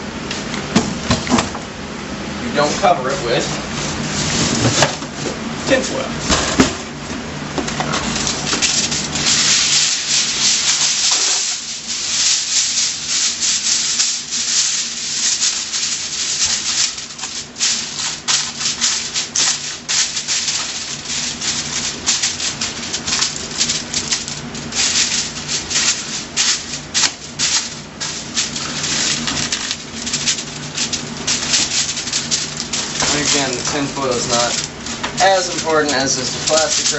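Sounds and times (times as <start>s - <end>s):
aluminium foil crinkling: 7.8s - 36.9s.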